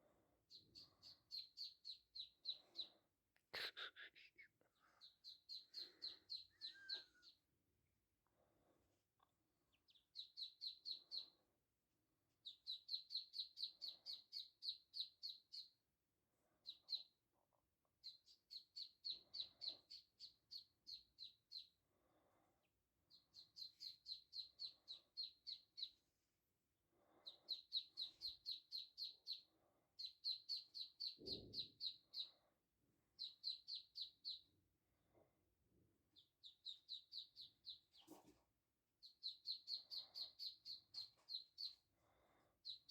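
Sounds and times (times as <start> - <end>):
ducklings peeping: 0.5 - 2.9, 4.9 - 7.4, 9.8 - 11.4, 12.4 - 15.7, 16.6 - 17.1, 18.0 - 21.7, 23.1 - 26.0, 27.2 - 32.3, 33.2 - 34.5, 36.2 - 38.3, 39.0 - 41.8.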